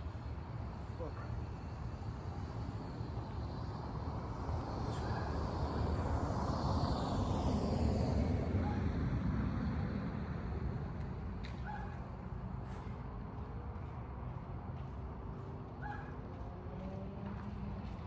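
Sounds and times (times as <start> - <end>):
vehicle passing by: 15.5 - 18.0.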